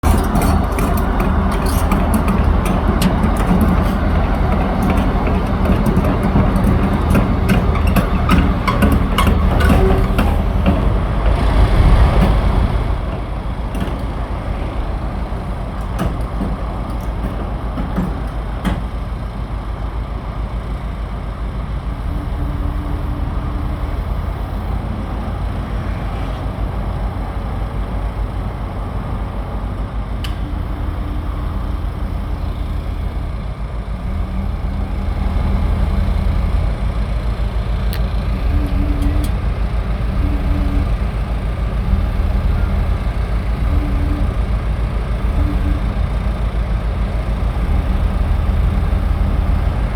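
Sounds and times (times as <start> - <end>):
sharp clicks and knocks: 0.0 - 19.3
heavy engine running: 0.0 - 49.9.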